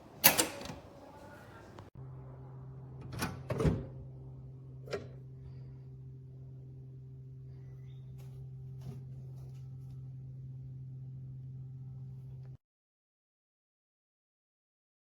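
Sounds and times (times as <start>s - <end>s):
low steady hum: 0.0s - 12.6s.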